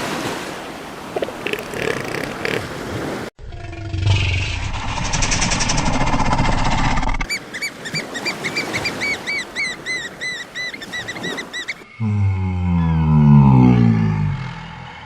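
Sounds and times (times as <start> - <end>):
rough fluttering noise: 3.5 - 7.3.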